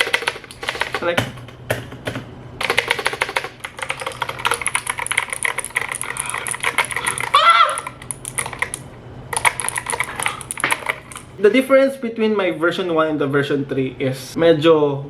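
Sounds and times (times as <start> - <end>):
mechanical keyboard typing: 0.0 - 11.4.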